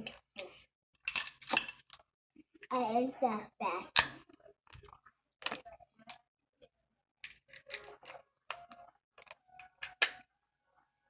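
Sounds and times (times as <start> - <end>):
eating clicks and crackles: 3.9 - 6.2, 7.2 - 10.2.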